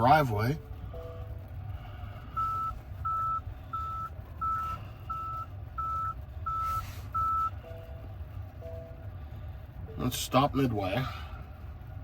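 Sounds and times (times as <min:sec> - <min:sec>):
low steady rumble: 0:00.0 - 0:12.0
reverse warning beeps: 0:02.3 - 0:09.0.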